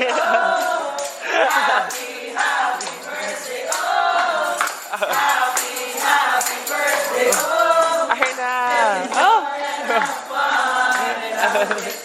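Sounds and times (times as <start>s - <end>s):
group singing together: 0.0s - 12.0s
tambourine shaking: 0.0s - 12.0s.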